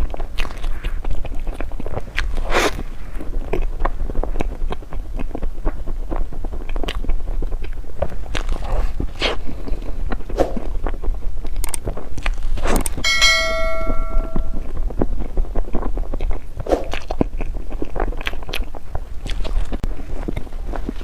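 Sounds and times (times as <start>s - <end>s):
crunching and chewing dessert: 0.0s - 13.0s, 15.2s - 21.0s
bright ringing ping: 13.0s - 14.7s.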